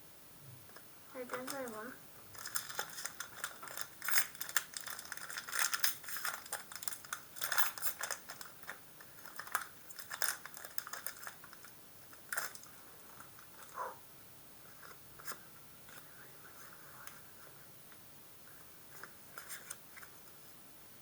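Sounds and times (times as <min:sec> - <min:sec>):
cards clicking and rustling: 0:02.4 - 0:11.6.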